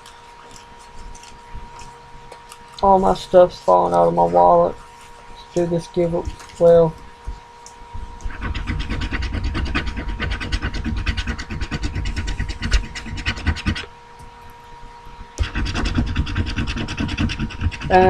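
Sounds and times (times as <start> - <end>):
scratch card being scratched: 8.2 - 13.9, 15.4 - 18.0.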